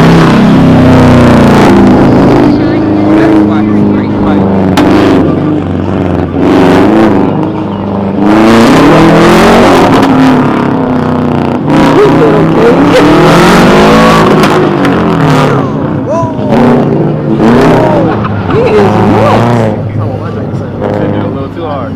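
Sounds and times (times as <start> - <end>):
car engine revving: 0.0 - 21.9
engine sharp pops: 4.7 - 5.3, 14.3 - 15.0.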